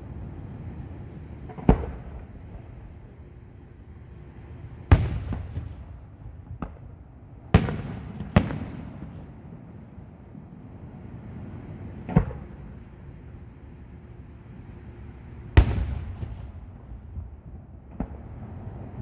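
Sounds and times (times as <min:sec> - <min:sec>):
fireworks booming: 0:01.4 - 0:03.0, 0:04.6 - 0:10.5, 0:11.8 - 0:13.1, 0:15.5 - 0:19.0.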